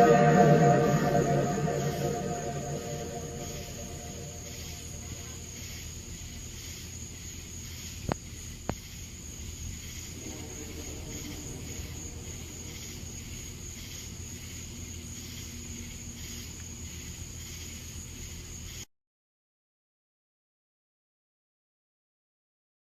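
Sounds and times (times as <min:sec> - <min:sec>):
low rumble: 0:00.0 - 0:05.1, 0:10.2 - 0:13.3
insects chirring: 0:00.0 - 0:18.9.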